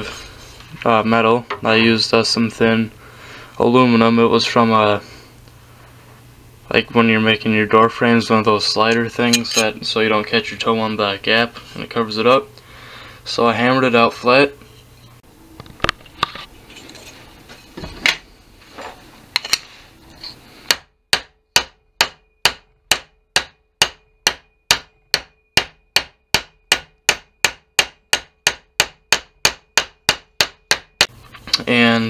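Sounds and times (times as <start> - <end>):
hammer striking metal strip: 8.9 - 9.7, 20.7 - 31.1.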